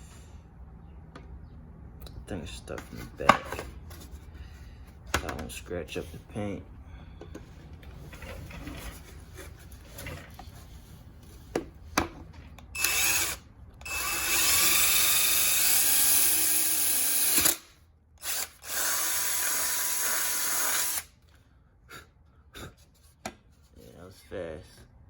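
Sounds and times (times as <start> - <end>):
electric drill boring: 12.8 - 21.1.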